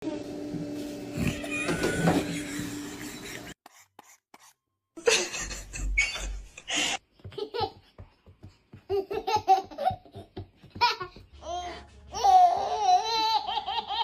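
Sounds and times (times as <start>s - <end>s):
small child laughing: 12.7s - 14.0s.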